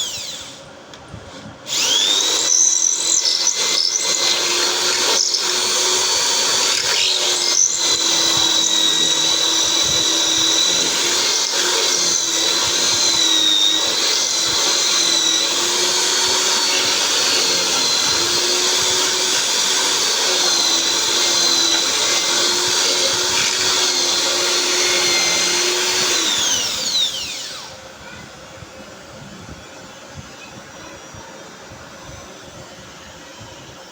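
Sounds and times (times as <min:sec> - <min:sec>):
electric drill motor whine: 0:00.0 - 0:33.9.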